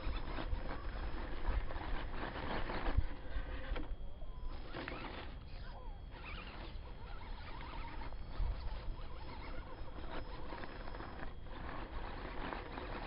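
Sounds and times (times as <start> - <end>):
small electric motor whining: 0.0 - 13.0
tyres scrabbling on stone: 6.2 - 13.0.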